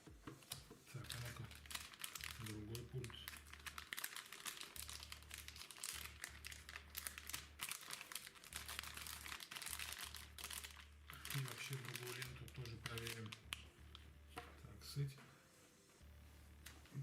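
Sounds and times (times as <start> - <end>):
crinkly packaging rustling: 0.4 - 14.1
low hum: 8.4 - 17.0.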